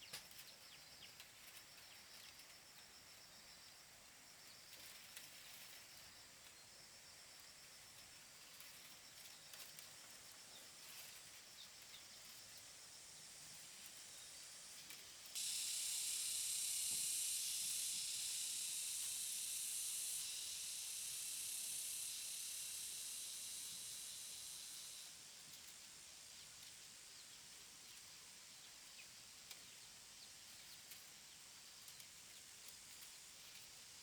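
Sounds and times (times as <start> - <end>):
cicada droning: 7.6 - 26.7
faint insect trilling: 8.0 - 26.4.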